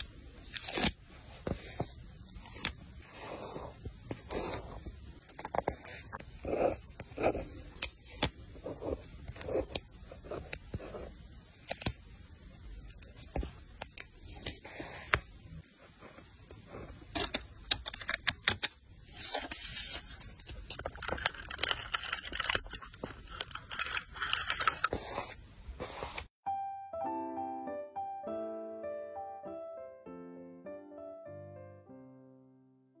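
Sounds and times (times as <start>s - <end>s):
paper rustling: 17.1s - 26.3s.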